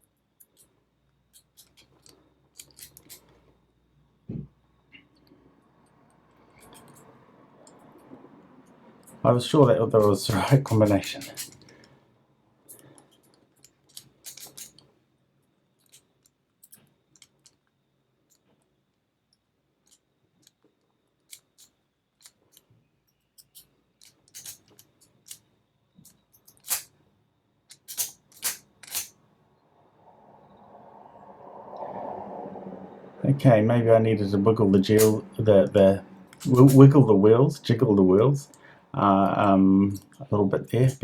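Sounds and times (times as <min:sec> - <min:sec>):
padlock clicking and rattling: 0:00.4 - 0:00.7, 0:01.3 - 0:03.3, 0:10.0 - 0:11.9, 0:12.7 - 0:14.9, 0:15.8 - 0:17.7, 0:21.2 - 0:27.0, 0:27.7 - 0:29.2, 0:36.3 - 0:36.8.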